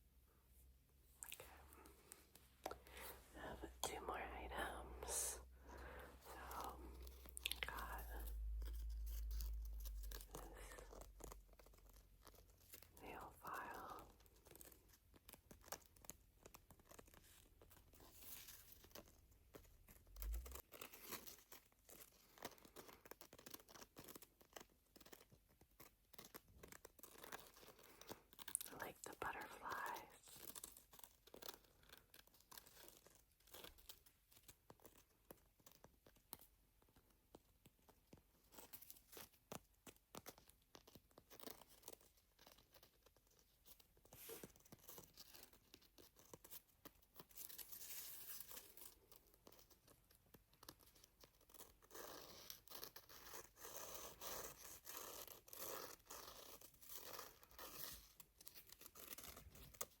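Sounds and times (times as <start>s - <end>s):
nail file scratching: 50.8s - 59.9s.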